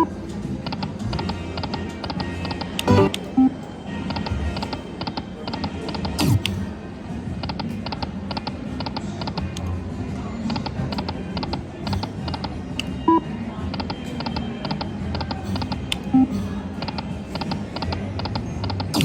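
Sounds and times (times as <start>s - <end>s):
slot machine music: 0.0s - 6.6s
slot machine reels ticking: 0.7s - 3.4s.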